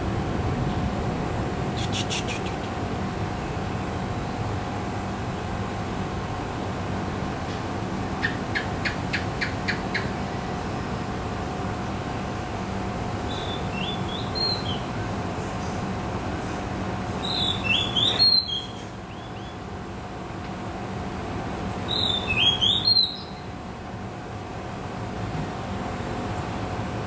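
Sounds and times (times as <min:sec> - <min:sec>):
steady background hum: 0:00.0 - 0:27.0
bird singing: 0:01.8 - 0:02.7, 0:13.2 - 0:15.8, 0:17.2 - 0:19.6, 0:21.9 - 0:23.5.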